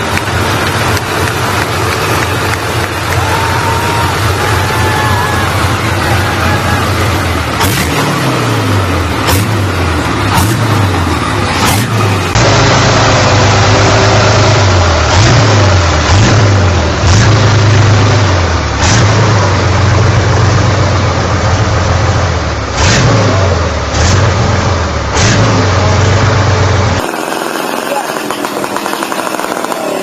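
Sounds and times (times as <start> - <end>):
motorcycle engine revving: 0.0 - 30.0.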